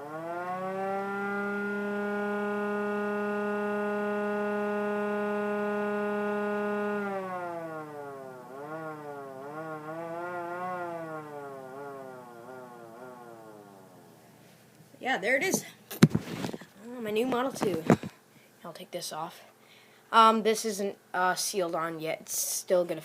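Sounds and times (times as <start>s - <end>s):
small motor-driven siren wailing: 0.0s - 14.0s.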